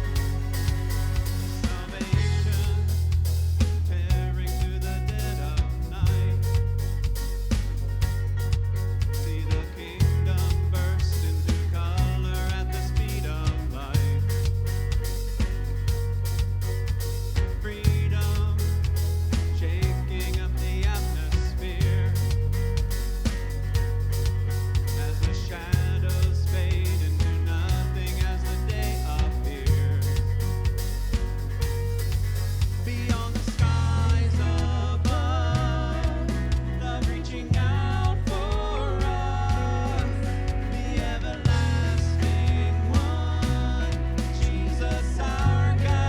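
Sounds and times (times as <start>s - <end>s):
person singing: 0.0s - 7.2s, 9.1s - 15.2s, 17.4s - 23.0s, 24.7s - 30.7s, 32.7s - 46.0s
bass line: 0.0s - 46.0s
drum kit: 0.0s - 46.0s
guitar: 0.0s - 46.0s
worship song played by a band: 0.0s - 46.0s.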